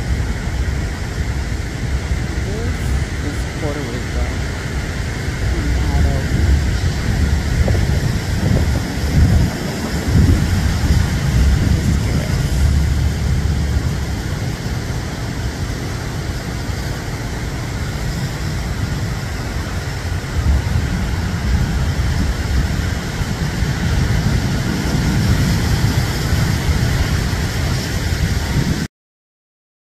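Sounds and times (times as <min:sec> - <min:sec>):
ocean surf on beach: 0:00.0 - 0:28.9
wind buffeting microphone: 0:00.0 - 0:28.9.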